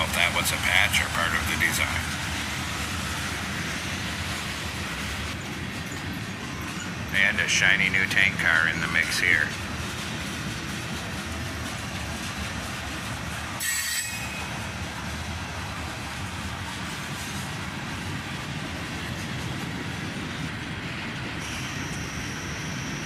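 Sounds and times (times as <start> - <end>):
freight train wheels rumbling: 0.0 - 23.0
high wheel squeal: 5.8 - 7.6, 13.6 - 14.6, 21.4 - 23.0.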